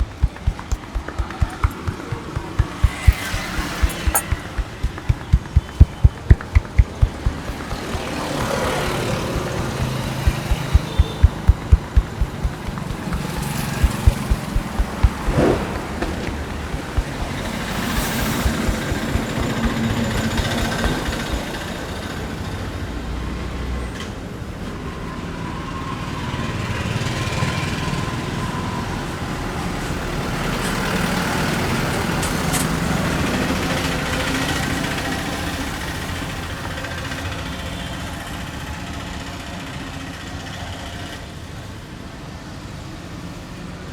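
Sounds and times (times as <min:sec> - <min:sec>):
rapid hand taps on a back: 0:00.0 - 0:21.8
street traffic noise: 0:00.0 - 0:23.1.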